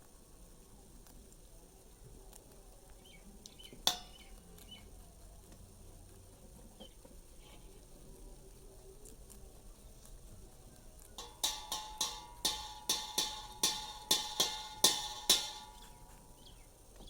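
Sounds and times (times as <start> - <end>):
low background hiss: 0.0 - 17.0
faint high chirps: 1.6 - 5.7, 15.7 - 17.0.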